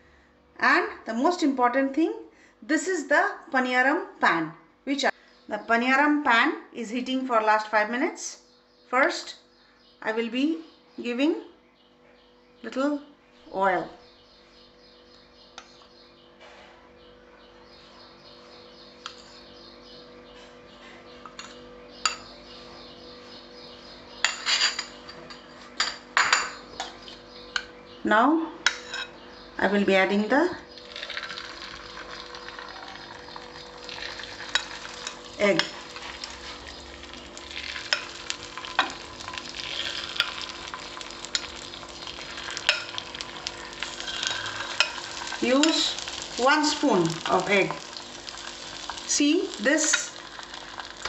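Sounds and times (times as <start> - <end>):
egg sizzling in hot oil: 30.8 - 51.0
metal spoon clinking on pan: 41.3 - 41.6, 42.3 - 43.0, 43.8 - 46.0
spoon clicking against pan: 41.3 - 41.6.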